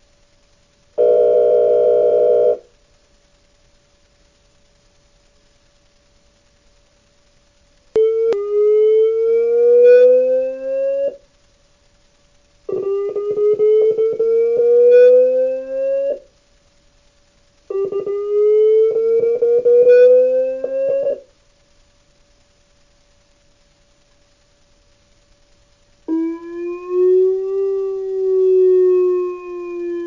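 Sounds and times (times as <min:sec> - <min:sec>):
faint steady hum: 0:00.0 - 0:30.0
electronic siren rising tones: 0:12.7 - 0:16.2, 0:17.7 - 0:21.2, 0:26.1 - 0:30.0.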